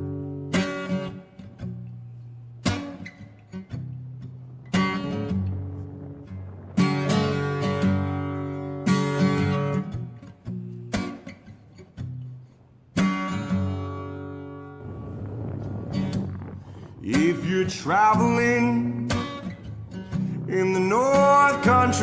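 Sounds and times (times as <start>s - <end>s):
acoustic guitar strumming: 0.0s - 22.0s.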